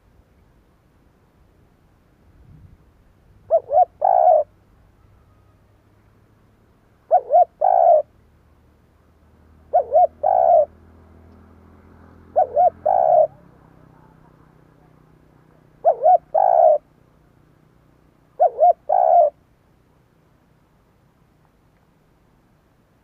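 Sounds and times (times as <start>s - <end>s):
dove cooing: 3.4s - 4.6s, 7.1s - 8.1s, 9.6s - 10.9s, 11.9s - 16.9s, 18.4s - 19.4s.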